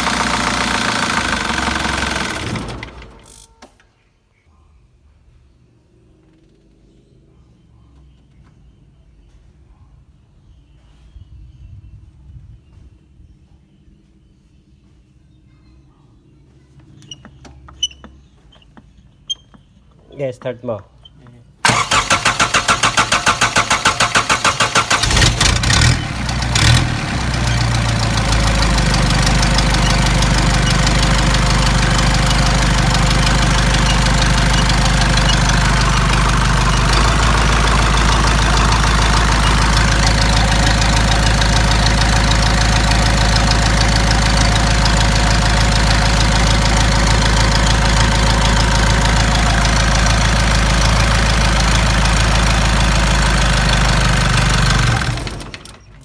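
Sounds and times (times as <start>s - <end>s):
diesel engine idling: 0.0s - 3.5s, 21.6s - 55.9s
diesel engine cranking: 0.0s - 3.8s, 21.6s - 56.0s.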